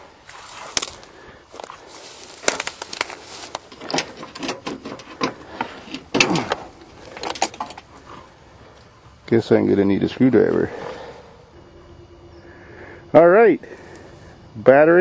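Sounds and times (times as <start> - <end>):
objects handled clicking and rattling: 0.7 - 9.4.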